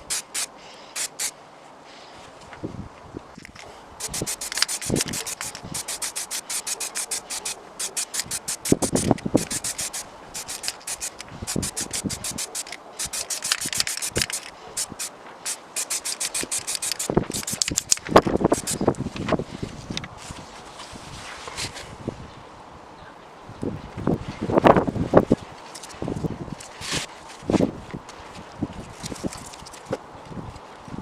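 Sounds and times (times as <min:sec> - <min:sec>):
hand sanding metal: 0:00.0 - 0:01.3, 0:04.0 - 0:18.9.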